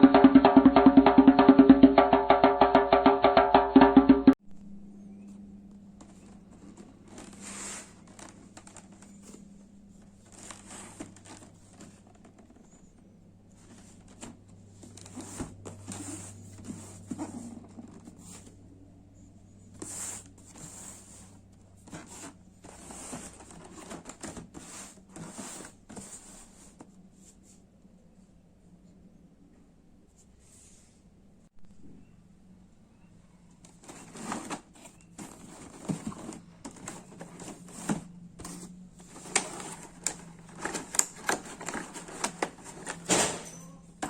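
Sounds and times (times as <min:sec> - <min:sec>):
faint steady hum: 0:04.3 - 0:44.0
packaging rustling and tearing: 0:33.7 - 0:43.2.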